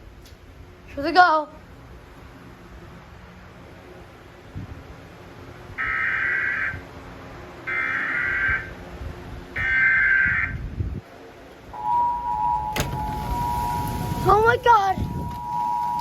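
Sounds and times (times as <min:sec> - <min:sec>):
two-tone attention signal: 0:11.8 - 0:16.0.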